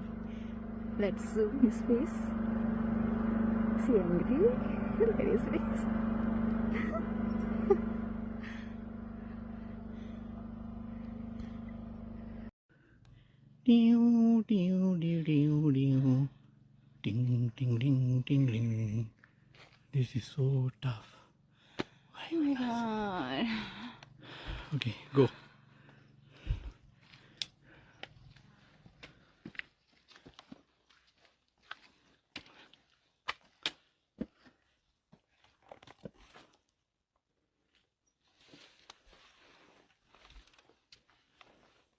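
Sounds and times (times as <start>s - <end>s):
low mechanical hum: 0.0s - 29.2s
footsteps on rocky trail: 19.2s - 19.9s, 26.4s - 36.6s.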